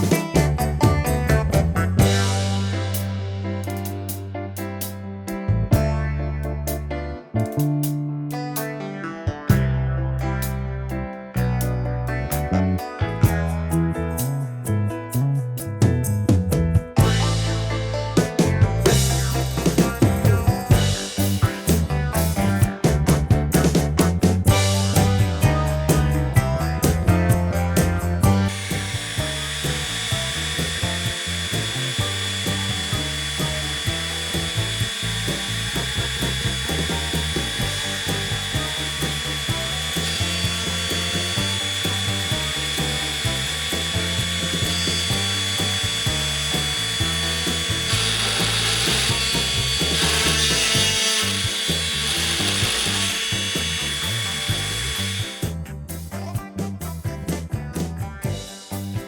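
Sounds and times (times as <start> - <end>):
motors shifting tones: 28.2 - 55.5
router bit cutting wood: 28.2 - 55.5.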